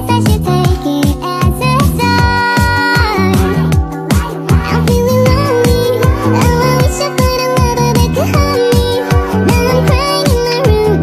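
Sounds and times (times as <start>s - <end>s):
electronic music with beat: 0.0s - 11.0s.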